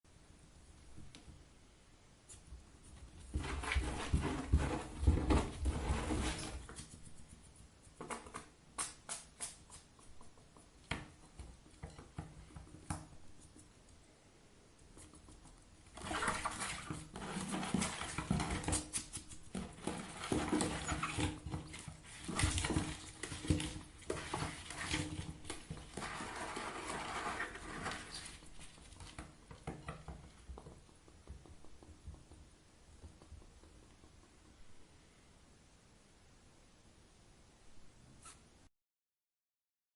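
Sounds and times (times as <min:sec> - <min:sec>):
claws scrabbling on a bathtub: 0:14.8 - 0:34.6.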